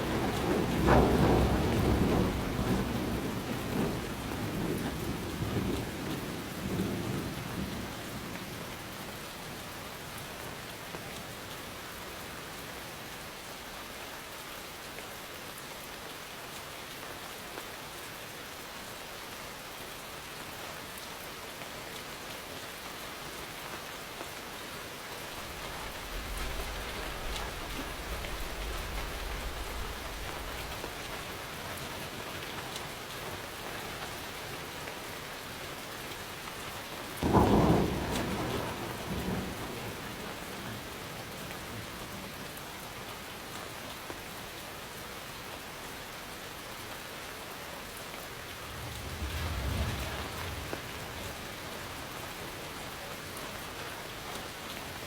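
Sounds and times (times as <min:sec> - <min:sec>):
thunder rumbling: 0:00.0 - 0:08.0, 0:25.3 - 0:32.1, 0:37.2 - 0:42.1, 0:48.3 - 0:52.9
heavy rain falling: 0:00.0 - 0:55.0.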